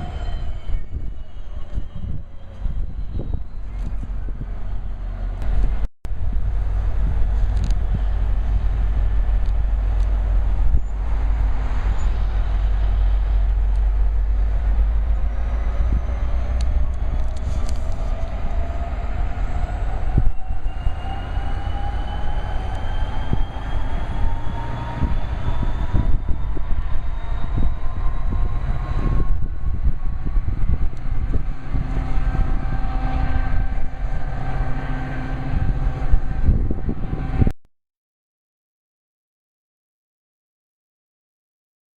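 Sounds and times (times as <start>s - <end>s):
train whine rising in pitch: 0.0s - 3.6s, 4.2s - 37.5s
train rumbling: 0.0s - 37.6s.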